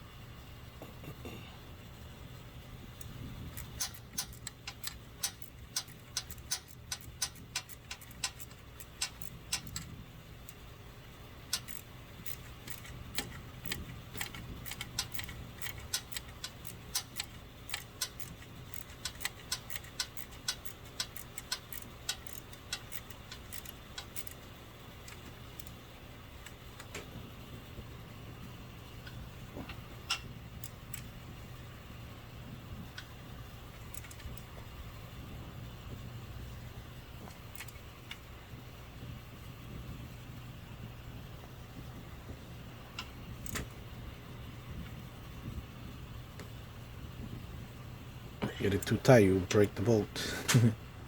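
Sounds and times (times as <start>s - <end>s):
ratchet wrench clicking: 3.0s - 10.7s, 11.4s - 25.8s, 33.8s - 34.5s.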